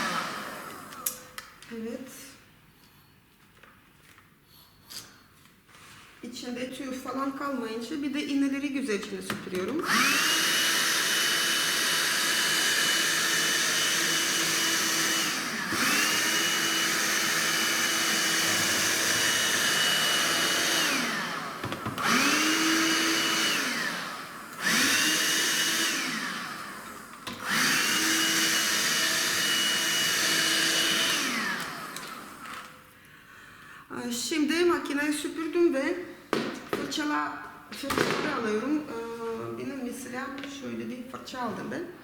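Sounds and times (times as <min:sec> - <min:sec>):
handheld vacuum cleaner whine: 0:00.0 - 0:01.3, 0:09.8 - 0:32.8.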